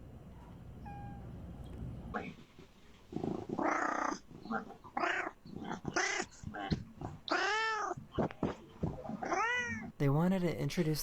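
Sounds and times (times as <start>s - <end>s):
cat meowing: 5.0s - 8.0s, 9.2s - 9.9s.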